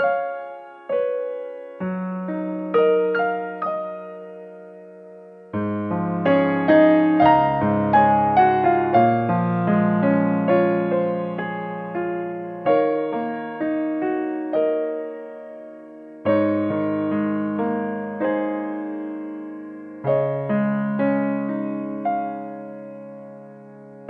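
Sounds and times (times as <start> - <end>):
gentle piano chords: 0.0 - 24.0.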